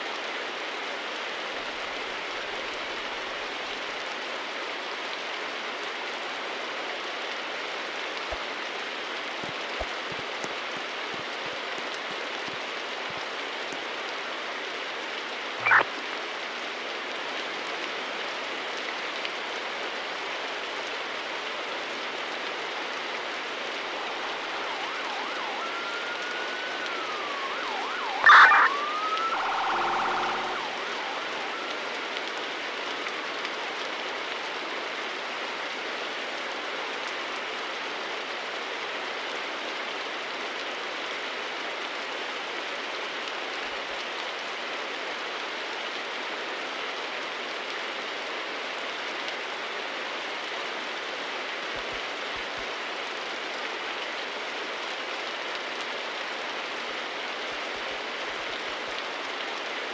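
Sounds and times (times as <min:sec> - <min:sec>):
distant emergency vehicle siren: 0:15.6 - 0:15.8, 0:21.7 - 0:34.7
loud short siren blast: 0:15.6 - 0:15.8, 0:23.3 - 0:32.5
short siren whoop: 0:15.6 - 0:15.8, 0:22.9 - 0:33.3.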